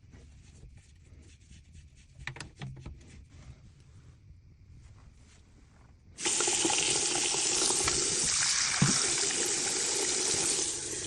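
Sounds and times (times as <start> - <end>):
faucet water running into sink: 6.2 - 11.0.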